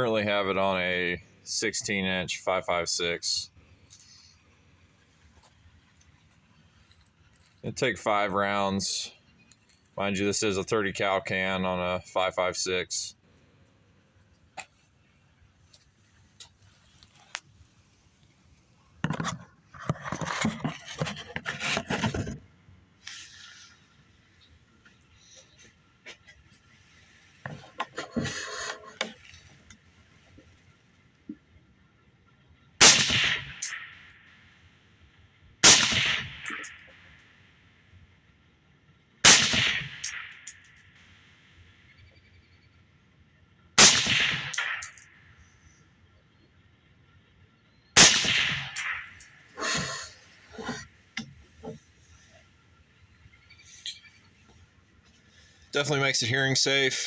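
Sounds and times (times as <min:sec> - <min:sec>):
suppressed rifle shots: 0:32.8 - 0:33.8, 0:35.6 - 0:36.6, 0:39.2 - 0:40.5, 0:43.8 - 0:45.0, 0:48.0 - 0:49.3.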